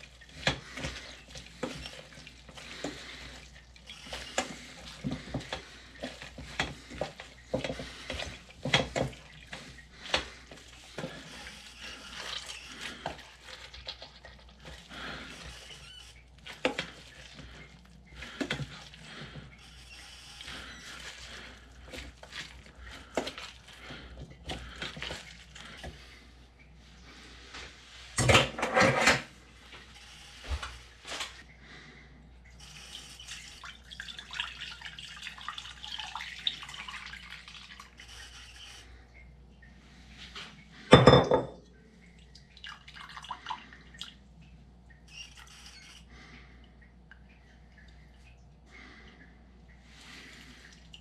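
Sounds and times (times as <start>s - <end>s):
dishes and utensils clinking: 40.9s - 41.6s.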